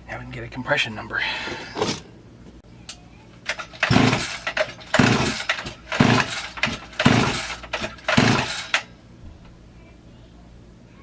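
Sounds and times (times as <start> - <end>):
chainsaw recoil starter pulls: 3.5 - 8.9.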